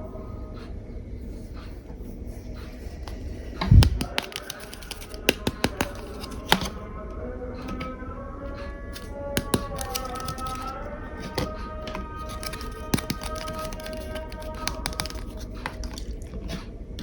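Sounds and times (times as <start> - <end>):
plastic toy pieces clicking: 4.0 - 6.6, 9.0 - 10.7, 12.2 - 15.8.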